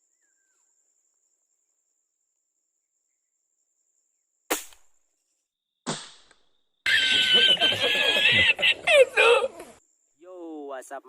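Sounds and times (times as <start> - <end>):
air gun shots: 4.5 - 5.0, 5.9 - 6.4.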